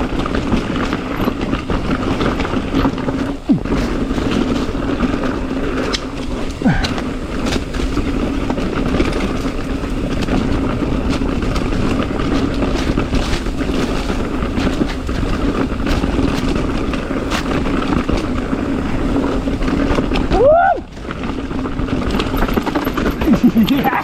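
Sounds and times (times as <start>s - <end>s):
bike rattling and knocking: 0.0s - 24.0s
tyres rolling over rock: 0.0s - 24.0s
steady hum: 3.2s - 8.5s.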